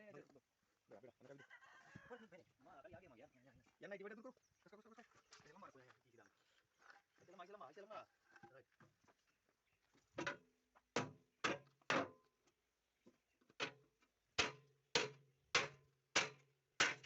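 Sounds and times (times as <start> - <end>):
hammer striking steel: 14.4 - 17.0.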